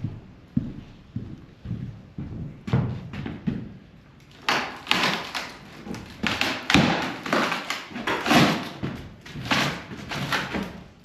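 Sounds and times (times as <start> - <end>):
wood being struck and broken: 4.4 - 10.8.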